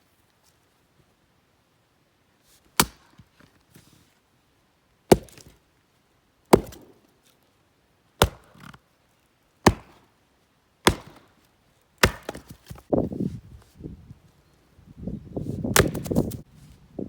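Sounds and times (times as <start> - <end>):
axe chopping firewood: 2.8 - 3.1, 5.1 - 5.6, 6.5 - 7.0, 8.2 - 8.8, 9.6 - 10.1, 10.8 - 11.4, 12.0 - 12.9, 15.6 - 16.4.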